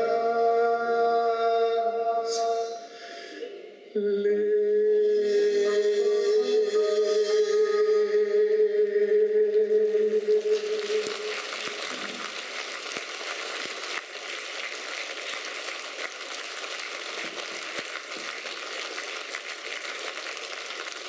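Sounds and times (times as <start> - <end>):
audience applauding: 9.9 - 21.0.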